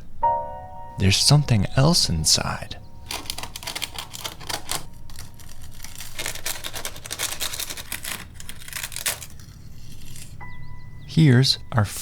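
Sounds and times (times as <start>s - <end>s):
paper nest tearing and crackling: 3.0s - 10.4s.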